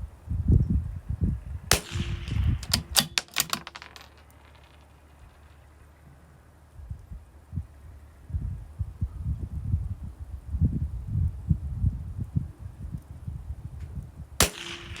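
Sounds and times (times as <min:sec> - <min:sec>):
rifle bolt metallic clicks: 0:01.7 - 0:04.1, 0:14.4 - 0:15.0
rifle shot: 0:01.7 - 0:04.8, 0:14.4 - 0:15.0.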